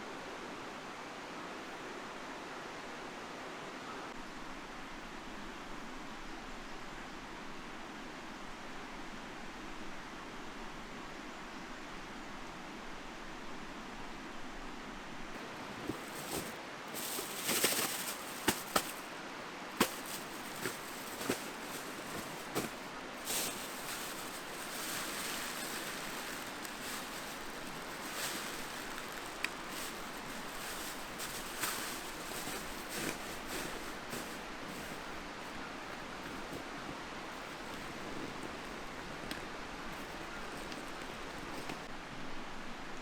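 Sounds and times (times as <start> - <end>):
mountain stream flowing: 15.4 - 42.0.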